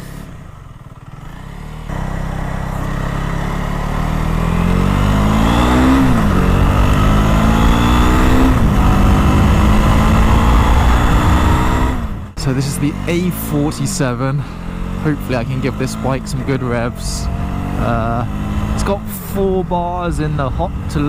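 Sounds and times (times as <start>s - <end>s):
motorcycle engine accelerating: 0.0s - 21.0s.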